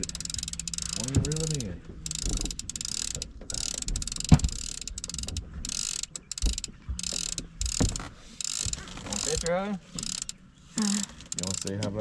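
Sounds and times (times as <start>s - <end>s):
fishing reel ratchet clicking: 0.0s - 12.0s
sharp knocks: 6.3s - 10.1s.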